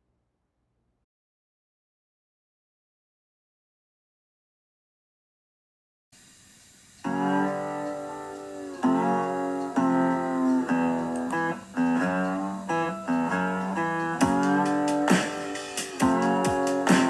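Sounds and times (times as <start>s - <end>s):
guitar plucked chords: 7.0s - 17.0s.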